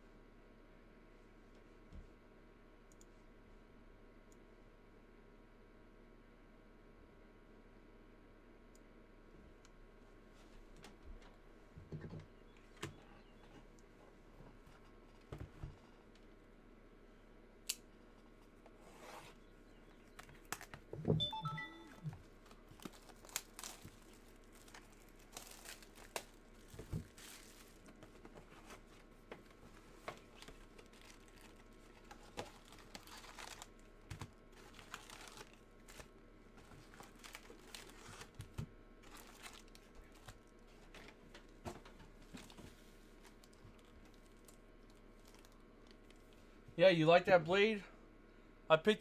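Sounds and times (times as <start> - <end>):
plastic wrap crinkling and tearing: 22.4 - 28.2, 30.2 - 41.0, 43.2 - 46.4.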